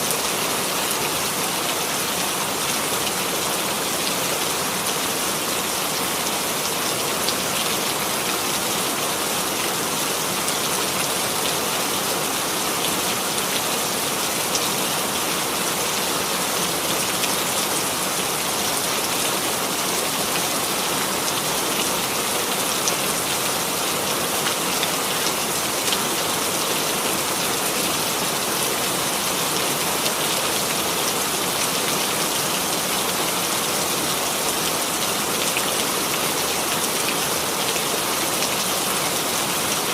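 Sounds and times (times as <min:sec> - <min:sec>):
steady rain patter: 0:00.0 - 0:39.9.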